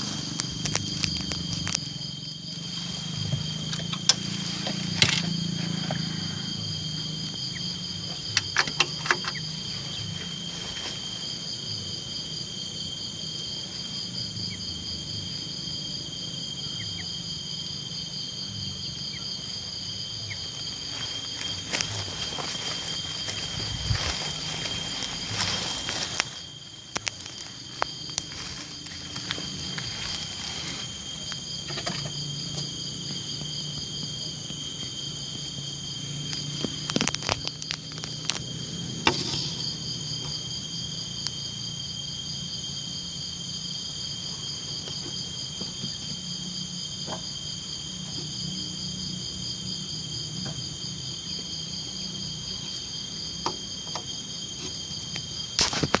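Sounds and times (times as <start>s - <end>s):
crickets trilling: 0.0s - 56.0s
scattered clicks and knocks: 3.2s - 5.9s, 8.1s - 9.6s, 31.6s - 32.8s.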